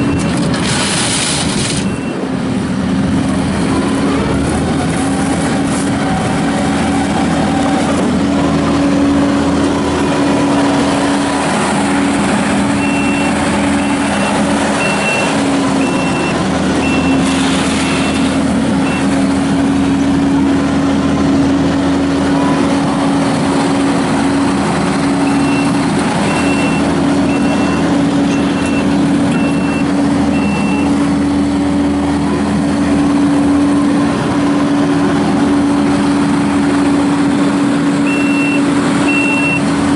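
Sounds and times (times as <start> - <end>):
diesel engine running: 0.0 - 39.9
reverse alarm beeping: 12.8 - 18.2, 25.2 - 31.0, 38.0 - 39.7.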